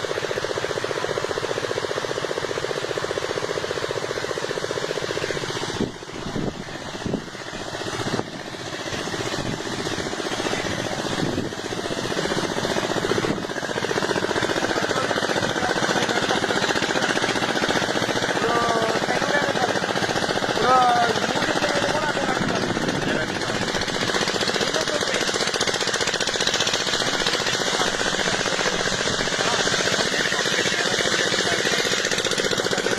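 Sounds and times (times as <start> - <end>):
diesel engine knocking: 0.0 - 32.9.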